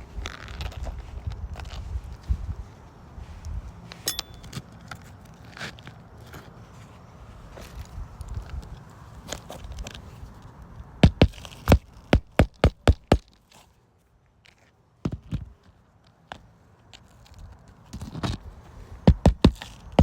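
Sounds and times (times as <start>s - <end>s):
hammer striking roof shingles: 11.0s - 13.3s, 19.1s - 20.0s.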